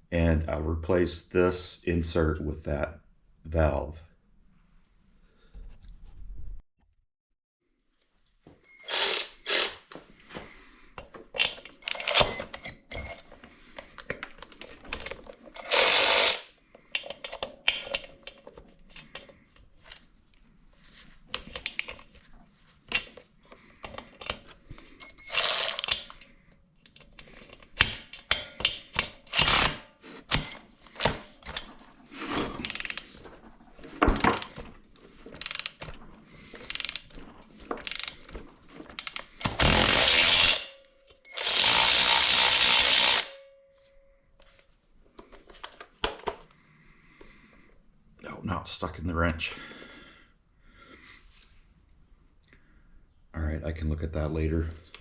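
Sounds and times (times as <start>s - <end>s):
ratchet wrench clicking: 15.6s - 16.5s, 25.2s - 26.0s, 32.6s - 33.1s, 35.4s - 35.8s, 36.6s - 37.1s, 37.8s - 38.2s, 39.0s - 40.7s, 41.4s - 43.3s.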